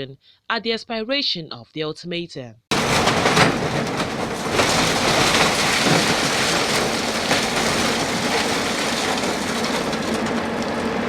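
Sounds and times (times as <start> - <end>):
heavy machinery engine noise: 2.7 - 11.0
masonry crumbling and clattering: 2.7 - 11.0.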